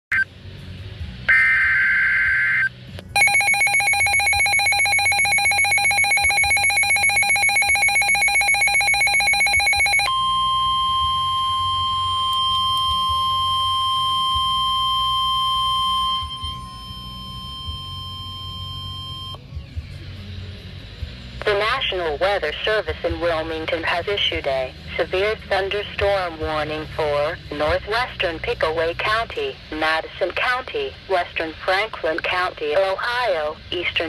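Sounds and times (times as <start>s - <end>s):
steady warning tone: 3.2s - 19.4s.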